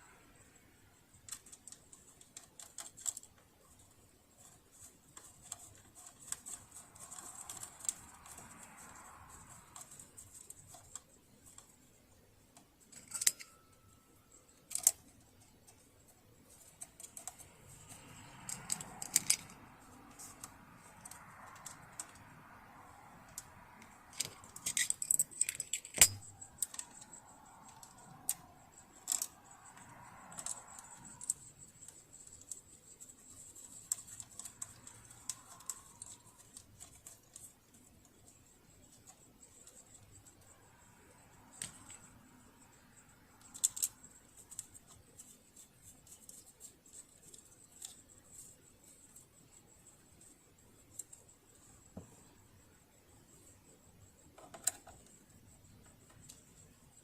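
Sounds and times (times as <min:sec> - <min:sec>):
metallic clicks of small tools: 0:12.9 - 0:13.6, 0:17.0 - 0:19.6, 0:24.1 - 0:31.4.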